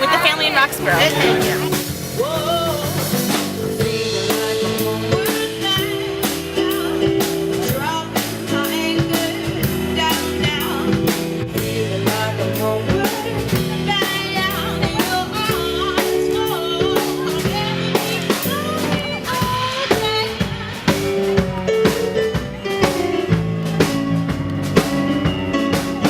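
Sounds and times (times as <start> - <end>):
person singing: 0.0 - 23.1
band music: 0.0 - 26.0
drum kit beat: 0.0 - 26.0.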